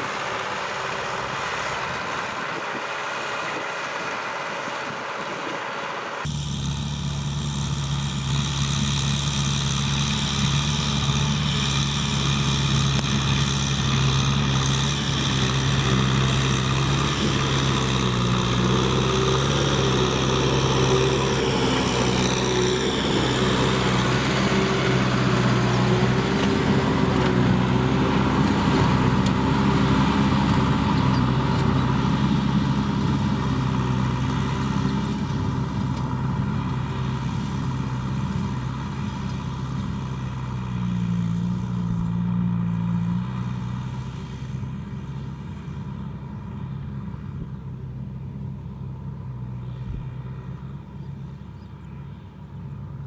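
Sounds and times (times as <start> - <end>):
tractor diesel engine running: 0.0 - 53.0.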